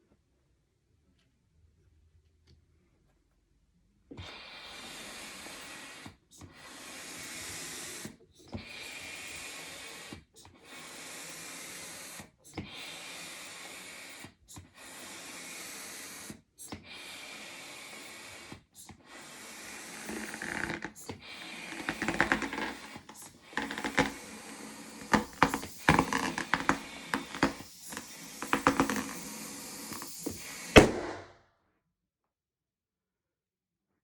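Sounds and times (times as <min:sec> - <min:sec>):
hand pump hissing strokes: 0:04.2 - 0:31.0.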